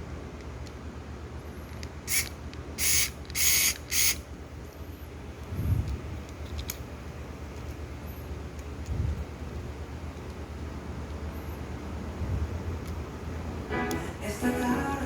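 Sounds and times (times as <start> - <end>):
short bursts of hiss: 2.1 - 4.2.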